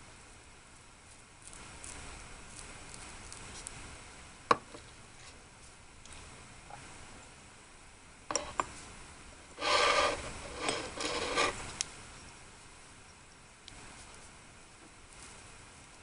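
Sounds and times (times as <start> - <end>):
utensil rasping scrapes: 9.6 - 11.7.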